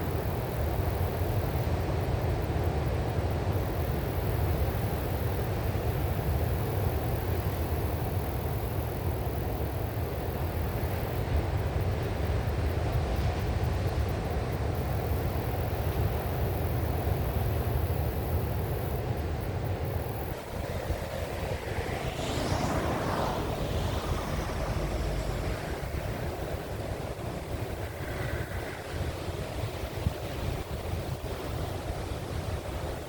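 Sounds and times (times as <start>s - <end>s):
strong wind: 0.0s - 33.0s
ocean surf rumbling: 20.0s - 33.0s.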